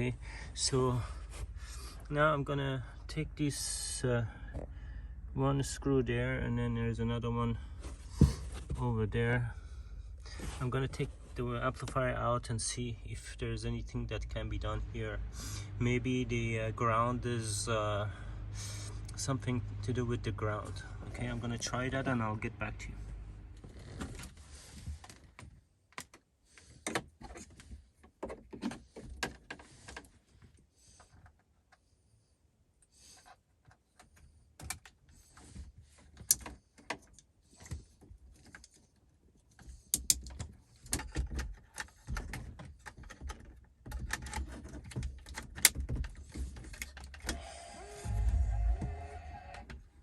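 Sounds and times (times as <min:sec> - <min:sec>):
plastic and metal clicks and rattles: 0:39.6 - 0:47.4.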